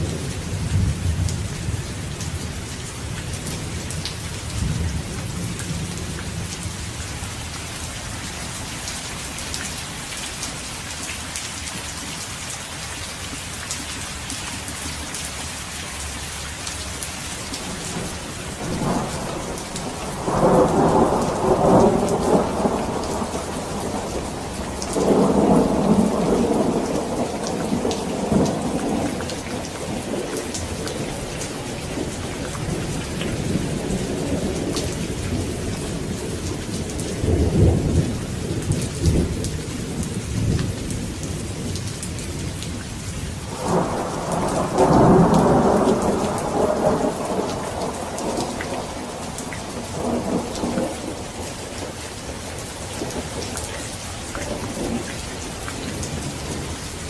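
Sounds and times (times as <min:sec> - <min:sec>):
steady rain falling: 0:00.0 - 0:57.0
thunder rolling: 0:17.6 - 0:30.3, 0:43.5 - 0:52.4.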